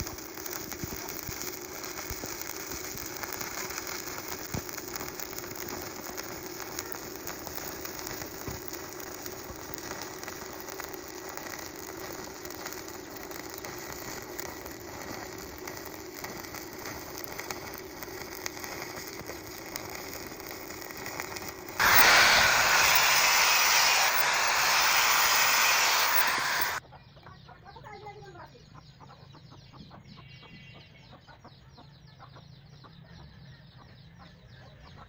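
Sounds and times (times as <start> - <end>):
welding arc crackling: 0.0 - 26.8
loud rushing noise: 21.8 - 26.8.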